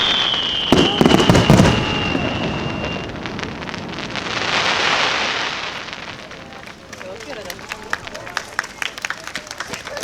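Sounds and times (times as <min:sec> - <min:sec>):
high firework whistle: 0:00.0 - 0:06.1
fireworks crackling: 0:00.0 - 0:10.0.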